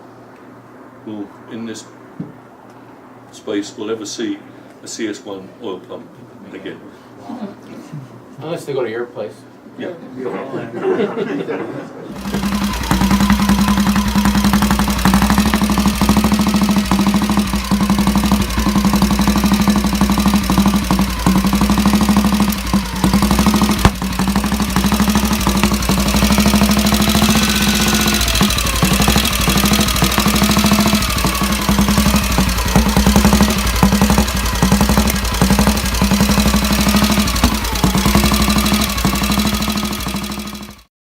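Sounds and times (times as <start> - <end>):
motorcycle engine revving: 12.1 - 40.9
sharp knock: 32.4 - 38.1.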